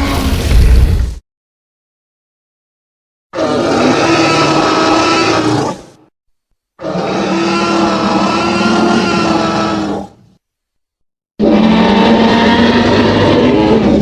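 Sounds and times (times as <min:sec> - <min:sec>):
dinosaur roar: 0:03.4 - 0:06.0, 0:06.8 - 0:10.2, 0:11.4 - 0:14.0.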